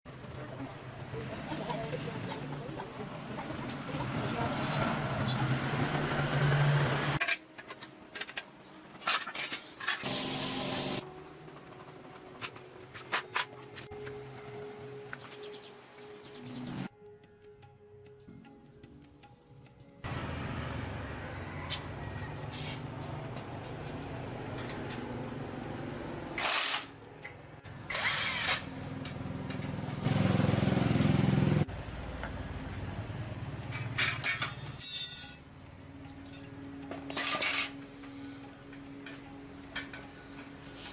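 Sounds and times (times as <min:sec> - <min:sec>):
spray hissing: 0:10.0 - 0:11.0
small engine running: 0:27.9 - 0:31.7.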